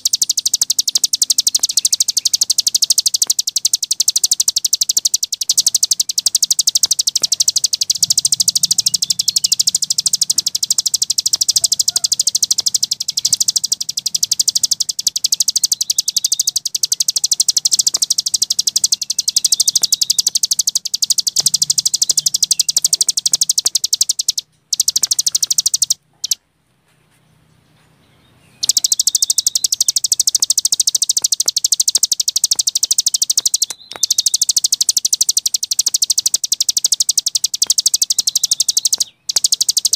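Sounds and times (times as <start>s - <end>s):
songbird fast high trill: 0.0s - 26.4s, 28.6s - 39.9s.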